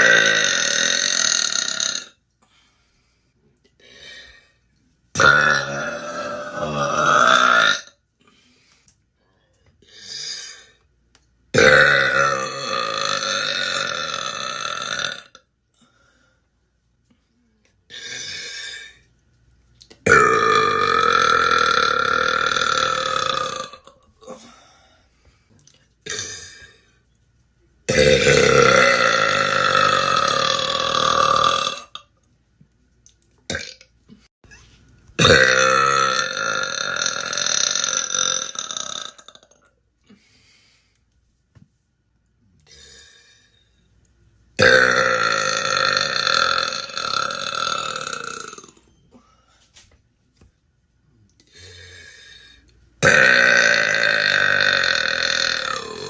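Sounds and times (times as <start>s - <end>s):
woman burping: 0.0s - 2.2s, 5.2s - 7.9s, 11.6s - 15.4s, 20.0s - 24.5s, 27.9s - 32.0s, 33.5s - 33.8s, 35.2s - 39.6s, 44.6s - 48.8s, 53.0s - 56.0s.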